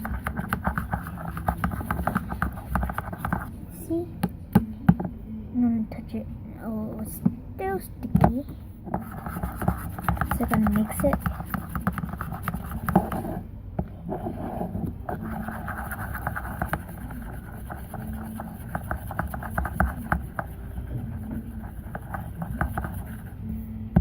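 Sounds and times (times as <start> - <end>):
utensil stirring sticky mixture: 0.0 - 3.5, 8.9 - 13.3, 14.4 - 23.4.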